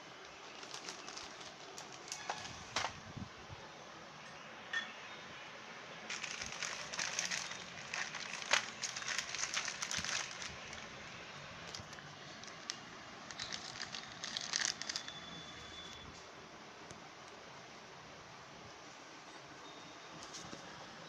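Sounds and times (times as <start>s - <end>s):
packaging crinkling and rustling: 0.2s - 3.0s, 6.1s - 15.6s.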